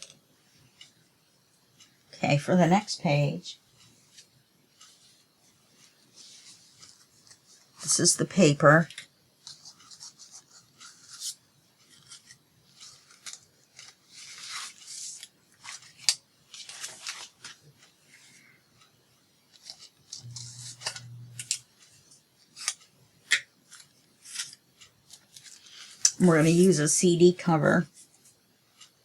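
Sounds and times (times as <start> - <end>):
low hum: 20.2 - 21.6.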